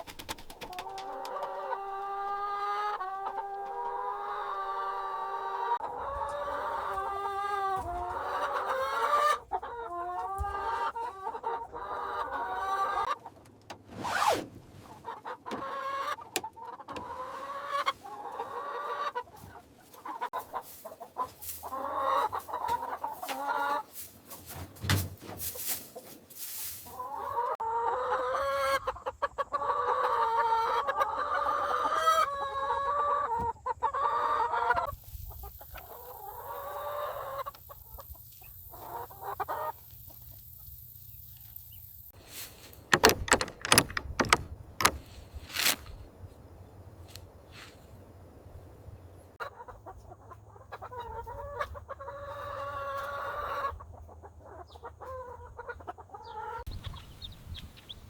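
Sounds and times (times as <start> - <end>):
chickens clucking: 0.0 - 13.5, 14.9 - 42.1, 47.5 - 58.0
clicks and knocks: 42.9 - 45.1.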